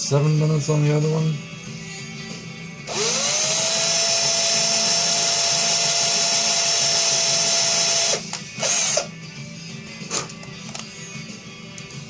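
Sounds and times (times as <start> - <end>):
small electric drill whining: 2.9 - 9.2.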